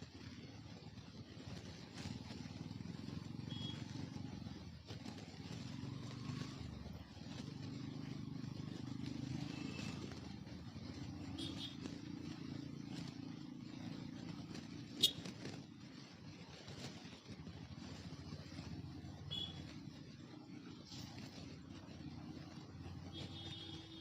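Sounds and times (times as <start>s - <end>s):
motorcycle engine running: 0.0s - 24.0s.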